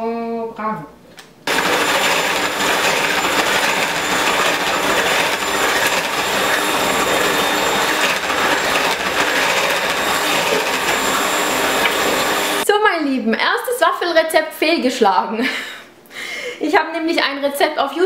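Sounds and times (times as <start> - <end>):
electric mixer beating batter: 1.5 - 12.6.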